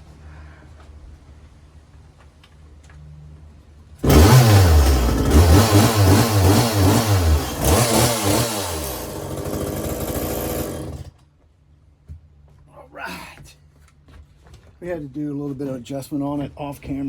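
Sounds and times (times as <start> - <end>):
chainsaw engine revving: 4.0 - 11.1.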